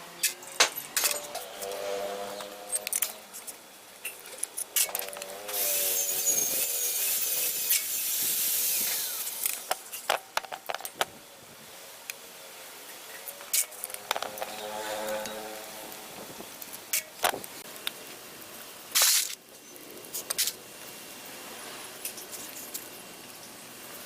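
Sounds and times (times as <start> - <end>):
hissing scrape on metal: 4.8 - 10.1.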